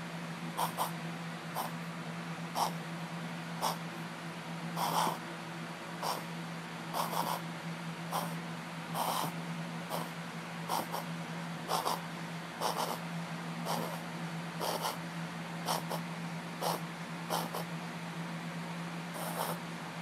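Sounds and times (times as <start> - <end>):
dog reverse sneezing: 0.6 - 0.9, 1.6 - 1.8, 2.6 - 2.8, 3.6 - 3.8, 4.8 - 5.2, 6.0 - 6.3, 7.0 - 7.4, 8.1 - 8.4, 9.0 - 10.1, 10.7 - 11.1, 11.7 - 12.0, 12.6 - 13.0, 13.7 - 14.0, 14.6 - 15.0, 15.7 - 16.0, 16.6 - 17.7, 19.2 - 19.6.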